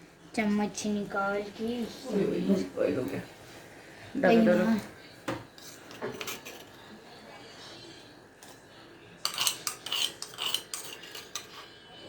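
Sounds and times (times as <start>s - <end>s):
metal spoon clinking on steel pot: 9.2s - 11.8s.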